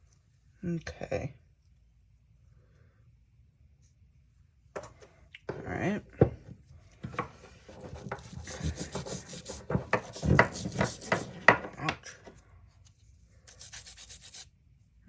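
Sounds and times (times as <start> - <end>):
wire brush scrubbing: 7.8 - 11.4, 13.5 - 14.5.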